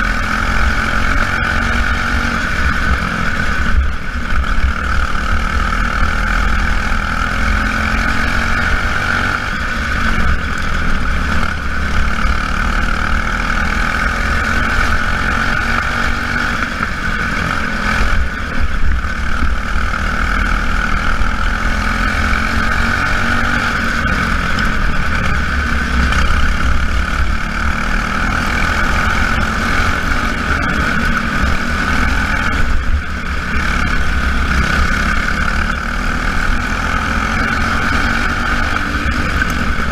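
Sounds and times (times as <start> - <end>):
low rumble: 16.6 - 38.0.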